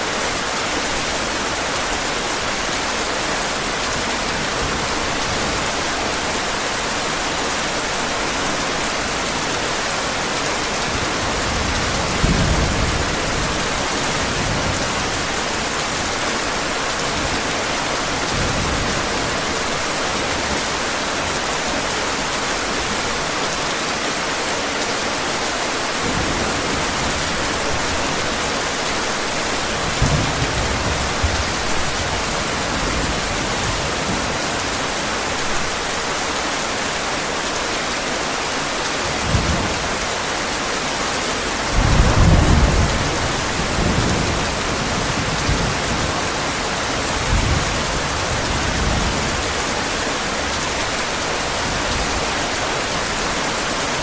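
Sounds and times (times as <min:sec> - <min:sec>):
heavy rain: 0:00.0 - 0:54.0
distant thunder rumbles: 0:41.7 - 0:46.2.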